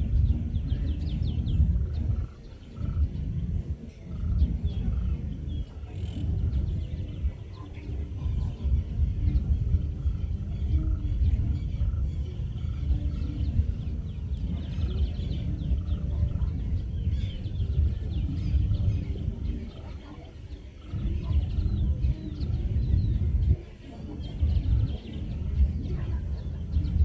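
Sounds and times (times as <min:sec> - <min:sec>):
heavy low rumble: 0:00.0 - 0:20.0
birds chirping: 0:00.0 - 0:27.0.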